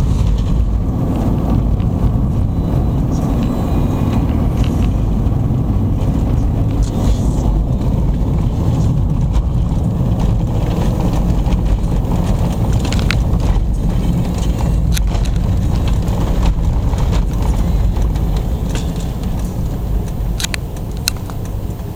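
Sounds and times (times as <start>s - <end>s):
rumble of tyres and engine: 0.0s - 21.9s
sharp clicks: 12.7s - 13.5s, 14.4s - 15.9s, 17.6s - 21.6s.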